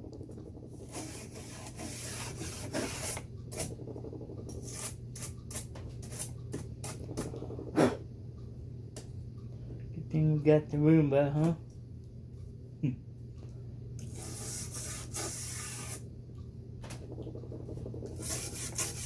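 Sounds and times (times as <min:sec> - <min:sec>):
toothbrush scrubbing: 0:00.6 - 0:03.8, 0:14.0 - 0:16.0, 0:17.9 - 0:19.0.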